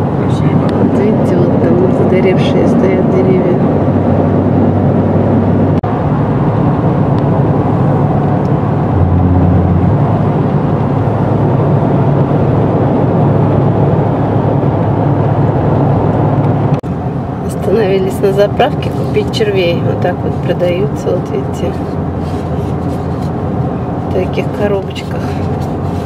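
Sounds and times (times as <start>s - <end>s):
car cabin road and engine noise: 0.0s - 26.0s.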